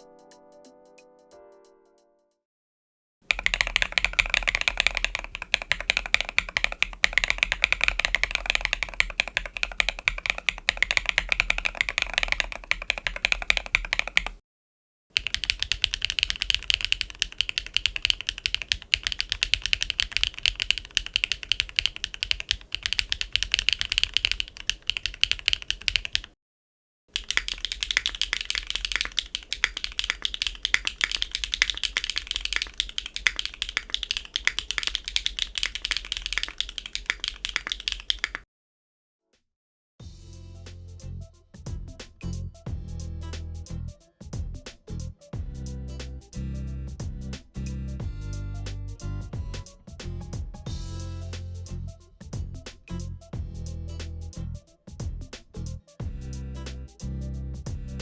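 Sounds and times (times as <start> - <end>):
typing on mechanical keyboard: 3.3 - 14.4, 15.2 - 26.4, 27.1 - 38.4.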